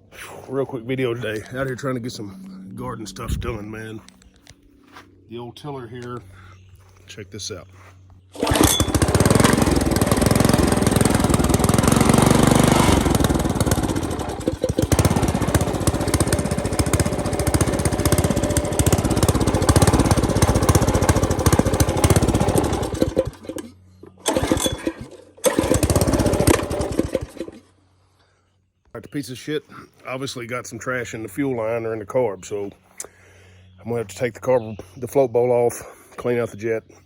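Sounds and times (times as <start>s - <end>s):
small gasoline engine running: 8.3s - 27.8s.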